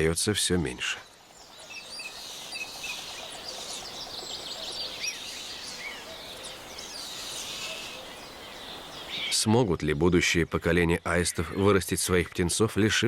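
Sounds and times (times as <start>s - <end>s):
small birds chirping and singing: 0.6s - 9.7s.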